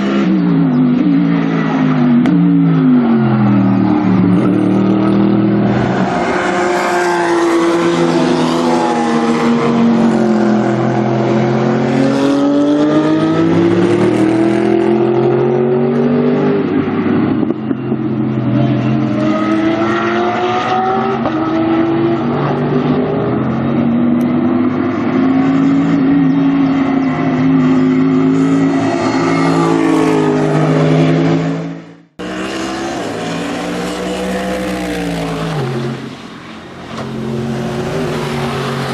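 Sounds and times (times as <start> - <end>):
race car engine revving: 18.5 - 38.9.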